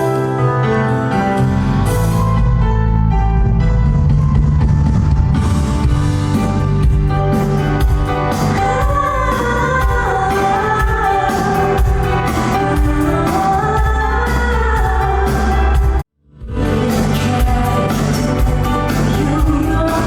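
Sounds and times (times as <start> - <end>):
woman singing pop song: 8.2 - 20.0.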